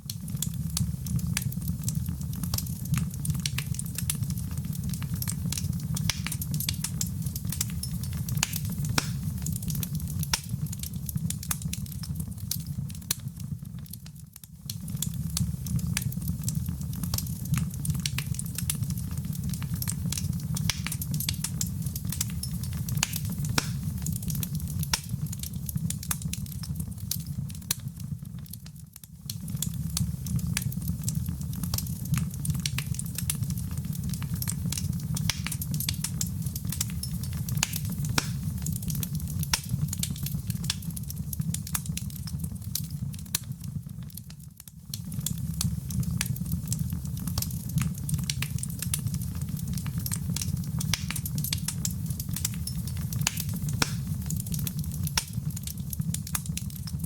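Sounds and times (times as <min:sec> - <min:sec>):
fire crackling and popping: 0:00.0 - 0:57.0.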